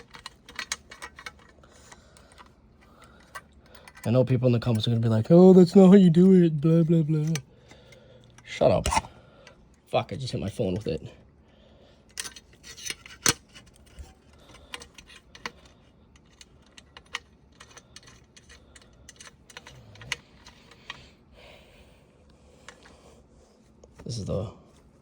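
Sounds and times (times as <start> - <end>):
small clicks taps and scrapes: 0.0 - 4.9, 12.1 - 21.1.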